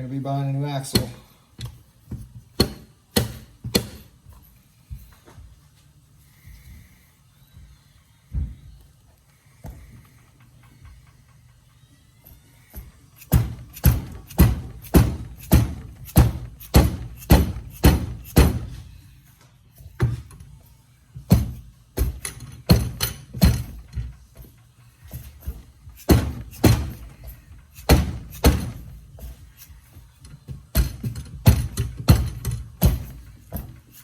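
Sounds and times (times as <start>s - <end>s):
hammer striking metal joint: 2.6s - 4.1s, 13.2s - 18.8s, 21.3s - 24.0s, 26.0s - 27.1s, 27.8s - 28.9s, 30.7s - 33.7s.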